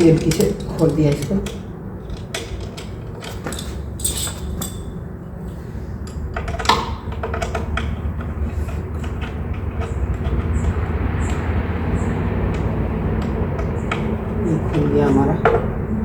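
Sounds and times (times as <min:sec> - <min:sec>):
metal tools clinking: 0:00.0 - 0:05.0
low background hum: 0:00.0 - 0:16.0.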